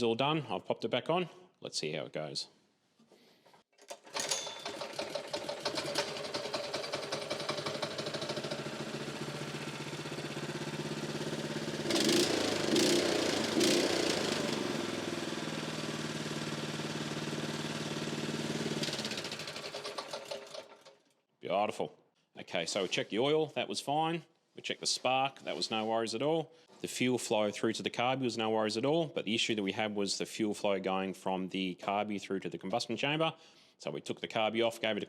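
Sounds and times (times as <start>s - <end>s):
small engine starting and running: 3.8s - 21.1s.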